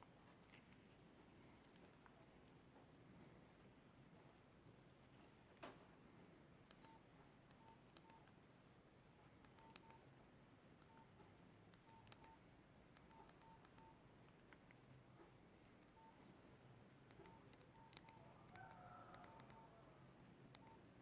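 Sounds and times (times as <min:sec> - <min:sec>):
keypad beeps: 0:06.7 - 0:08.3, 0:09.4 - 0:10.1, 0:10.8 - 0:11.2, 0:11.8 - 0:12.4, 0:13.0 - 0:14.0, 0:15.8 - 0:16.3, 0:17.1 - 0:19.8, 0:20.5 - 0:20.9.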